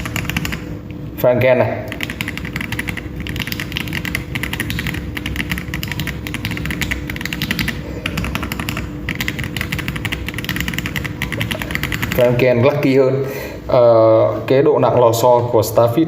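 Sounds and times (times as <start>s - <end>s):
mechanical keyboard typing: 0.0s - 0.6s, 1.9s - 12.4s.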